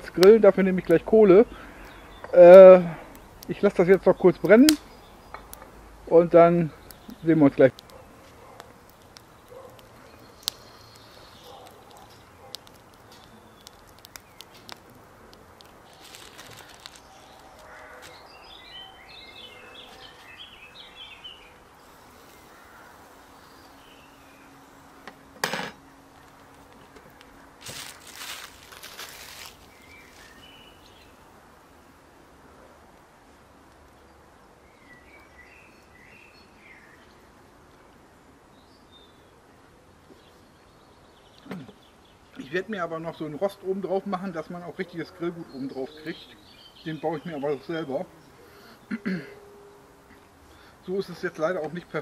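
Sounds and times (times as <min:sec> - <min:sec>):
bird singing: 0:00.0 - 0:14.8, 0:15.8 - 0:26.6, 0:29.4 - 0:31.2, 0:34.0 - 0:37.2, 0:40.1 - 0:52.0
wood fire crackling: 0:00.0 - 0:36.0
background hiss: 0:00.0 - 0:52.0.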